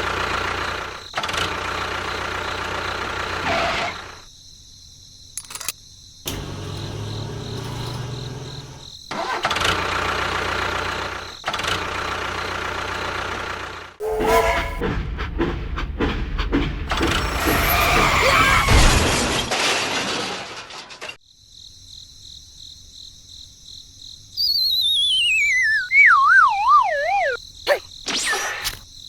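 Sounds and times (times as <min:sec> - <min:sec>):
small engine rattling: 0:00.0 - 0:04.2, 0:06.3 - 0:14.0
wavering downward whistle: 0:24.4 - 0:27.4.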